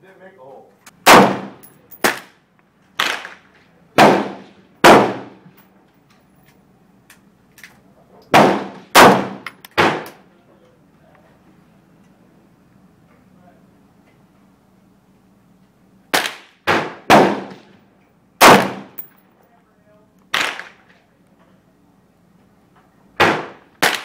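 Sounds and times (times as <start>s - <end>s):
rifle shots with ringing tail: 1.0s - 2.3s, 4.0s - 5.4s, 8.3s - 10.2s, 16.1s - 17.7s, 18.4s - 19.1s.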